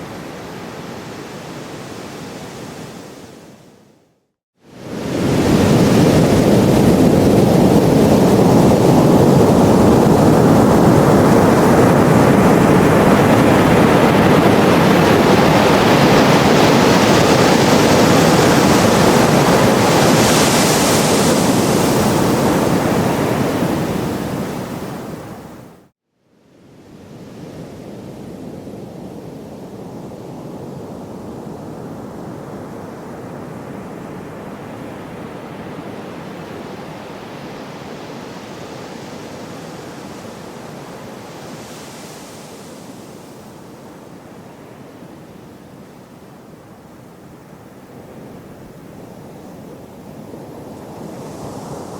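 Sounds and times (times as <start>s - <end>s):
ocean surf washing: 0.0s - 3.6s, 4.7s - 25.9s, 26.9s - 51.9s.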